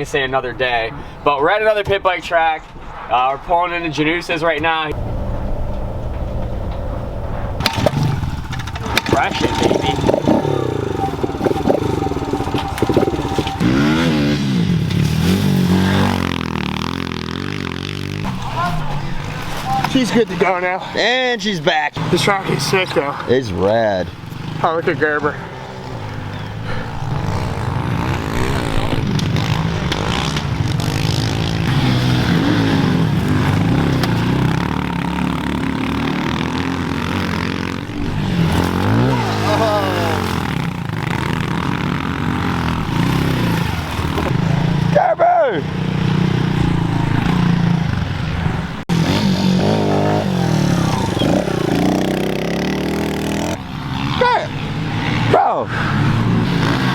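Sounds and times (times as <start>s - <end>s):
pit bike engine revving: 7.6s - 18.4s, 23.8s - 45.0s, 45.6s - 56.9s.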